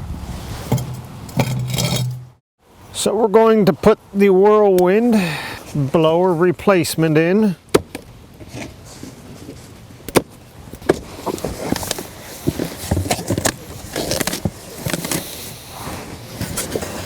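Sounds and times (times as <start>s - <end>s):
handling knocks and clicks: 10.1s - 15.3s
rustling: 10.9s - 17.0s.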